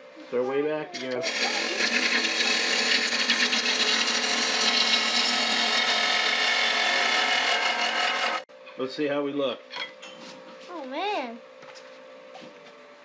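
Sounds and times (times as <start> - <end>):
lathe gouge scraping wood: 1.0 - 8.5.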